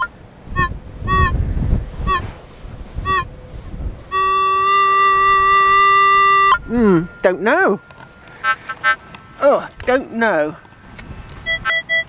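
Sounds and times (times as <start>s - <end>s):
metal detector beeps: 0.0s - 1.3s, 4.1s - 9.0s, 11.4s - 12.0s
metal detector steady tone: 0.0s - 1.4s, 2.0s - 2.4s, 3.0s - 3.4s, 4.1s - 9.4s, 11.4s - 12.0s.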